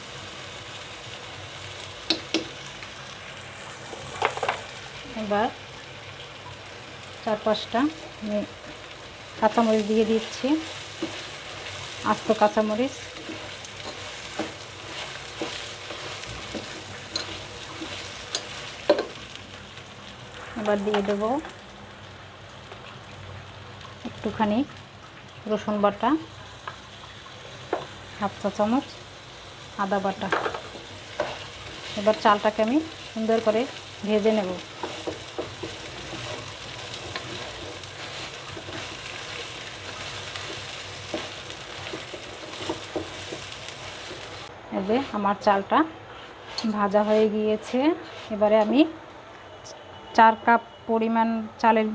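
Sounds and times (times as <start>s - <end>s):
rice sizzling in hot oil: 0.0s - 48.9s
spoon scraping pot: 13.0s - 19.2s, 34.6s - 39.0s, 46.1s - 48.8s.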